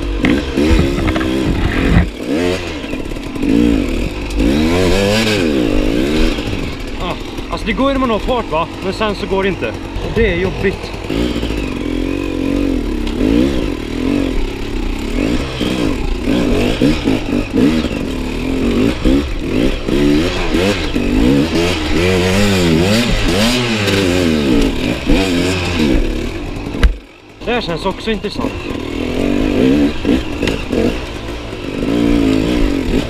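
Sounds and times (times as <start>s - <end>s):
motorcycle engine revving: 0.0s - 33.0s.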